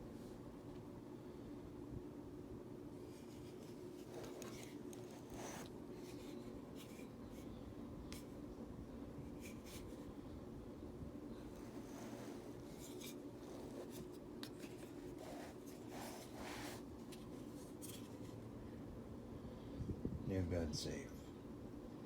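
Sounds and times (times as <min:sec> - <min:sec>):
quiet rubbing: 0:03.0 - 0:07.1, 0:11.3 - 0:18.4.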